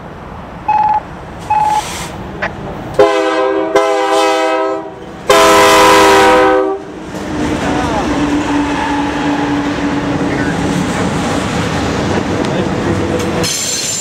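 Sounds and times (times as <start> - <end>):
short beeps: 0.7 - 1.9
locomotive air horn chord: 3.0 - 6.9.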